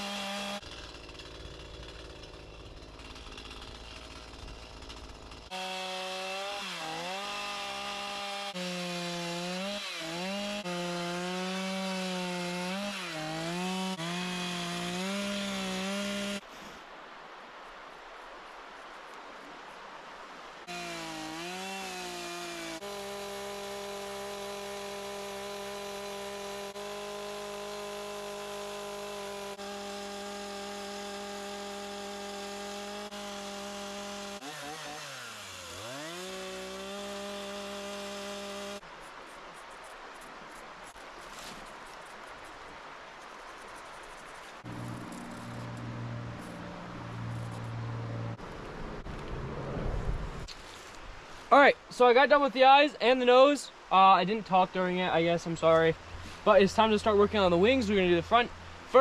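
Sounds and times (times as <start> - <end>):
chainsaw carving wood: 0.0 - 16.4, 20.6 - 38.8, 43.6 - 48.5.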